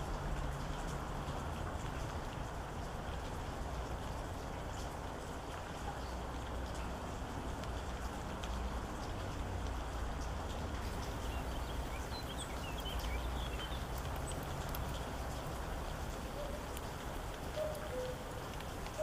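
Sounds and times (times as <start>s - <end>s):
rain drop ticks: 0.0s - 19.0s
steady rain: 0.0s - 19.0s
small birds chirping: 10.8s - 19.0s.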